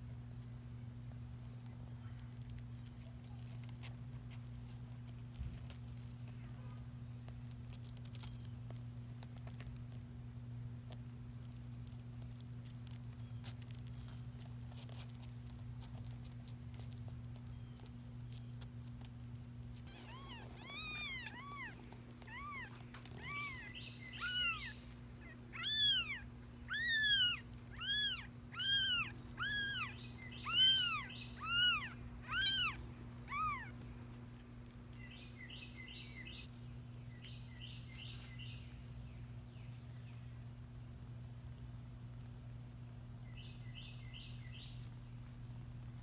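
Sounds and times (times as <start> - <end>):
steady low hum: 0.0 - 46.0
kitten mewing: 19.8 - 33.8.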